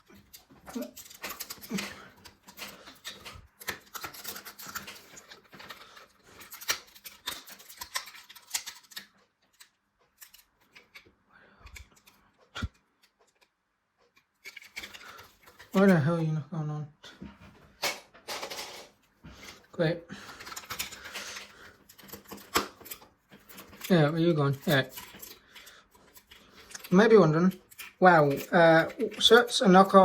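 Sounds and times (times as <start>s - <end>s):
plastic bricks clicking and rattling: 0.0s - 11.1s, 17.8s - 19.6s, 20.2s - 30.0s.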